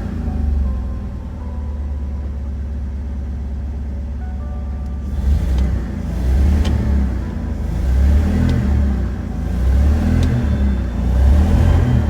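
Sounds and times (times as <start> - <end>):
engine revving: 5.0 - 12.0.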